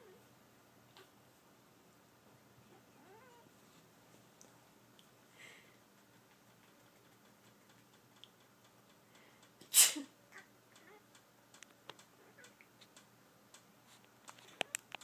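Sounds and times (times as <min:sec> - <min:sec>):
faint clicks: 0:05.9 - 0:09.6, 0:10.8 - 0:15.0
person sneezing loudly: 0:09.7 - 0:10.2.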